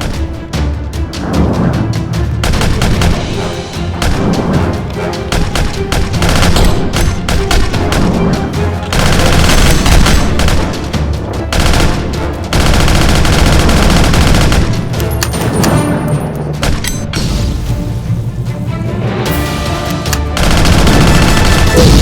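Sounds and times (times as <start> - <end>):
action music with heavy bass: 0.0 - 22.0
machine-gun fire sound effects: 2.4 - 3.4, 5.3 - 8.3, 8.9 - 15.0, 20.4 - 22.0.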